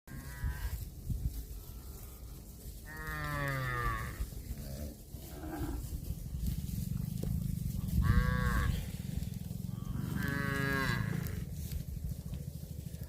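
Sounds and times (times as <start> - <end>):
steady low rumble: 0.1 - 13.0
cow mooing: 2.8 - 5.9, 7.8 - 9.0, 9.6 - 11.6.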